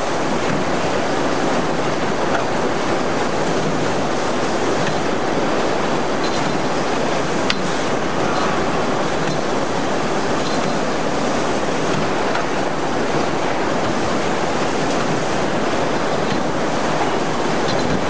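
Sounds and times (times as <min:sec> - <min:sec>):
machine rushing noise: 0:06.6 - 0:15.3.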